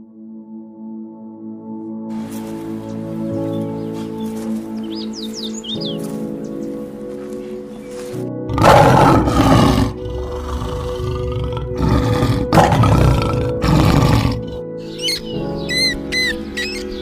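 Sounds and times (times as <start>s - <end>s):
background music: 0.0s - 17.0s
lion roaring: 8.5s - 14.6s.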